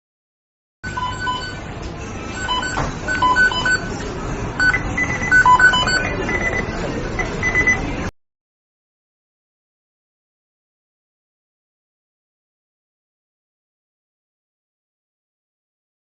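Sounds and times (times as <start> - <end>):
short electronic beeps: 0.8 - 1.6, 2.3 - 4.0, 4.6 - 8.0
steady noisy background: 0.8 - 8.1.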